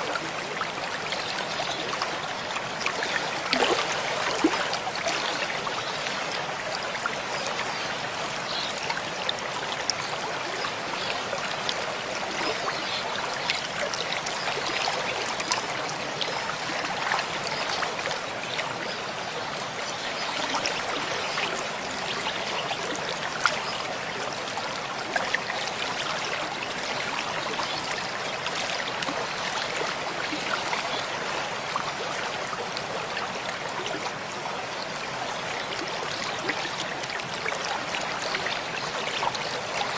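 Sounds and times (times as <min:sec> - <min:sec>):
running water babbling: 0:00.0 - 0:39.9.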